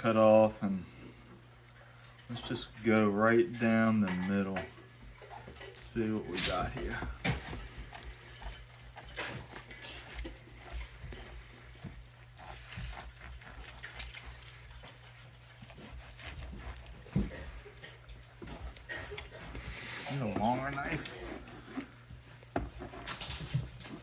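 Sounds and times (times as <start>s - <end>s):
knife sawing through meat: 5.8s - 22.2s
blade scraping cutting board: 18.5s - 23.3s.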